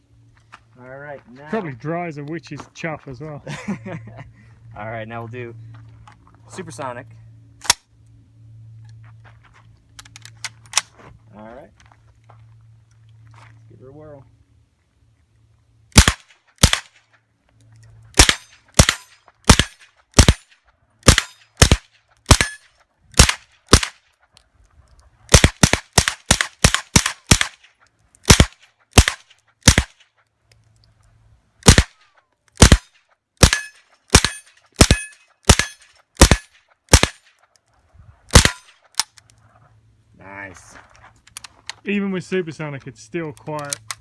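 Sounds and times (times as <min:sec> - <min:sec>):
suppressed gunshots: 0:15.9 - 0:17.0, 0:18.2 - 0:22.6, 0:25.3 - 0:27.6, 0:28.2 - 0:30.0, 0:31.6 - 0:32.0, 0:32.6 - 0:37.2, 0:38.3 - 0:38.7.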